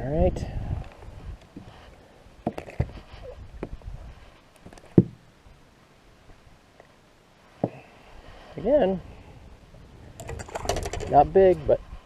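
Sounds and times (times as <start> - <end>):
knocks and clicks in a boat: 10.2 - 11.3.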